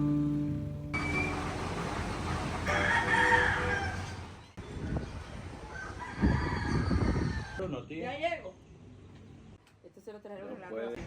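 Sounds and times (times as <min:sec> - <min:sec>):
rooster crowing: 0:02.6 - 0:04.3, 0:05.6 - 0:07.6.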